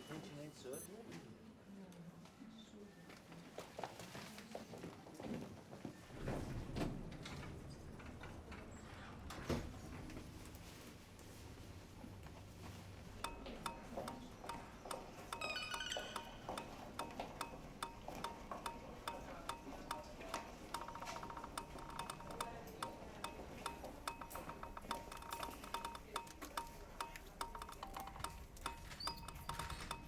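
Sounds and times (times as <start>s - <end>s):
percussive clicks and ticks: 13.0s - 30.0s
high electronic beeps: 13.2s - 30.0s.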